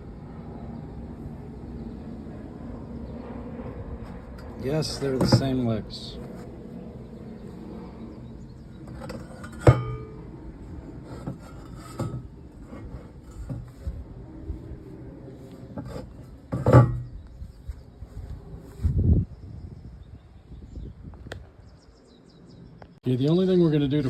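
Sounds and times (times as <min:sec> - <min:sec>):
metal legs clanking together: 0:08.9 - 0:10.2, 0:15.8 - 0:17.1.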